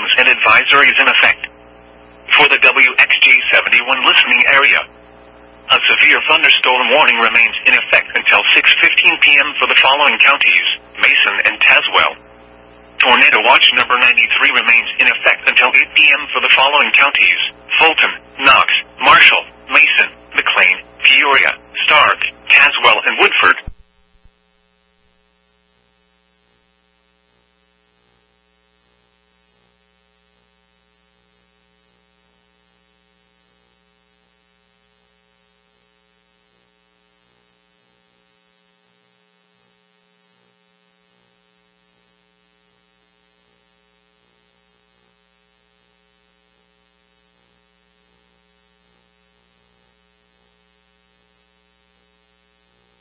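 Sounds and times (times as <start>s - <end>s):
faint electrical hum: 0.0s - 53.0s.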